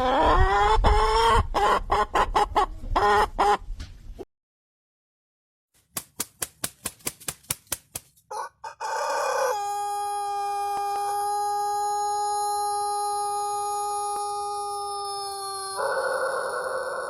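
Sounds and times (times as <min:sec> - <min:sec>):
chicken clucking: 0:00.0 - 0:03.8, 0:08.3 - 0:17.0.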